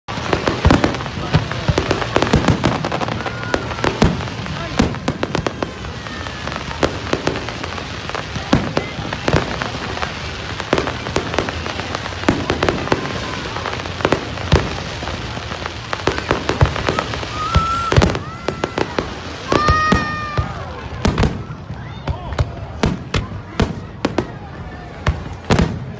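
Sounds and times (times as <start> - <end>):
continuous fizzing crackle: 0.1 - 25.9
fireworks bangs and crackles: 0.1 - 25.9.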